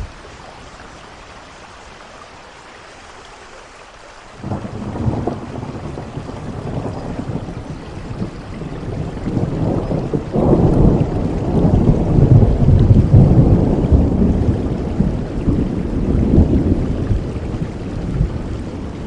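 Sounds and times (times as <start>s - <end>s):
steady rain: 0.0s - 19.0s
rolling thunder: 4.4s - 19.0s.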